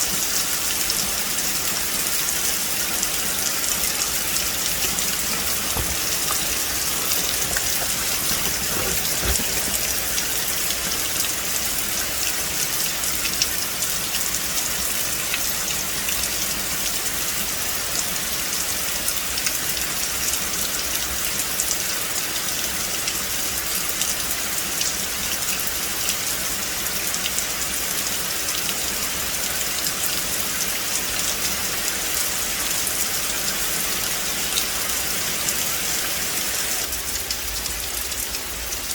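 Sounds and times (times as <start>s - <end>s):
rain falling on leaves: 0.0s - 20.5s.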